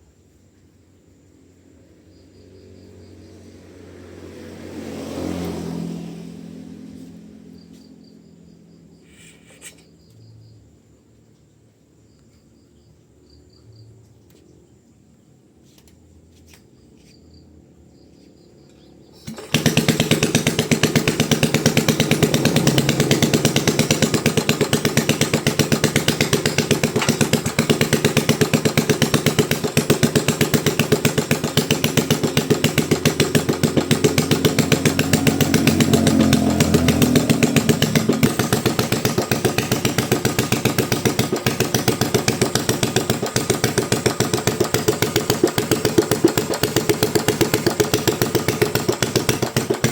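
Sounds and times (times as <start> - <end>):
small engine starting and running: 2.6 - 7.9, 18.7 - 49.9.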